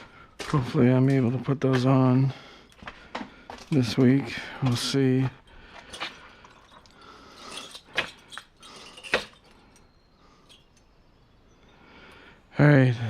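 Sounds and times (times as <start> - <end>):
small hard objects clinking: 4.6 - 10.9.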